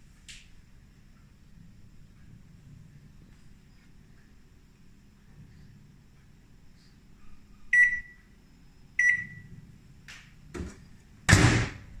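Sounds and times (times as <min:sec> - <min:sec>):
microwave beeping: 0:07.7 - 0:09.6
loud clunk: 0:10.6 - 0:12.0.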